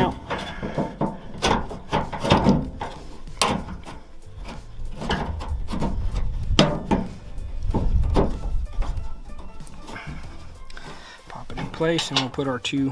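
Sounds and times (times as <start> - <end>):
sharp knocks: 0.0 - 10.3
handle assembly scraping: 0.0 - 12.5.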